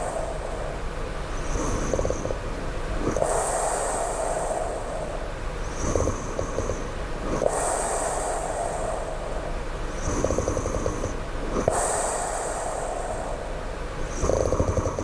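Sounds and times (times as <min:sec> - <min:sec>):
person snoring: 0:01.4 - 0:02.4, 0:10.0 - 0:11.2, 0:14.1 - 0:15.0.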